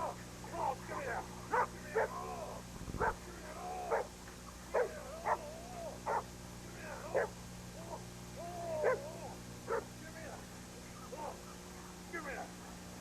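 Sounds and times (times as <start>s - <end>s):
dog barking: 1.5s - 2.2s, 3.0s - 3.2s, 3.9s - 4.1s, 4.7s - 6.3s, 7.1s - 7.4s, 8.8s - 9.1s, 9.7s - 9.9s.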